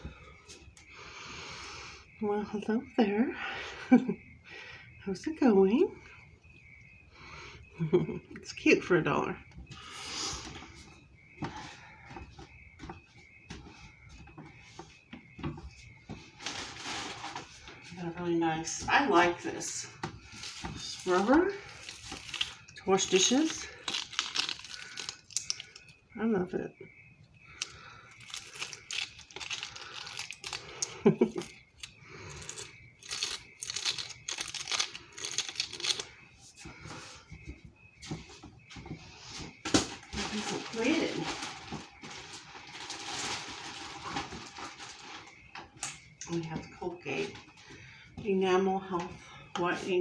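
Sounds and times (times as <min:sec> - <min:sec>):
small items knocking and rustling: 0:20.0 - 0:26.1, 0:27.3 - 0:46.0
plastic packaging crinkling: 0:20.3 - 0:26.0, 0:27.5 - 0:36.2, 0:40.2 - 0:45.3.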